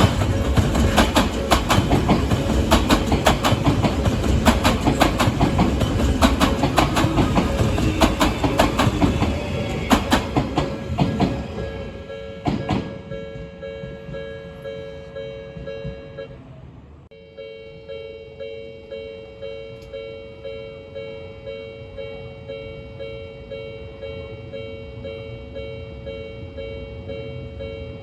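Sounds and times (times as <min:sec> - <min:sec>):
train wheels clacking over rail joints: 0:00.0 - 0:13.0
train rumble: 0:00.0 - 0:17.1
level crossing warning bell: 0:11.4 - 0:16.4, 0:17.1 - 0:28.0.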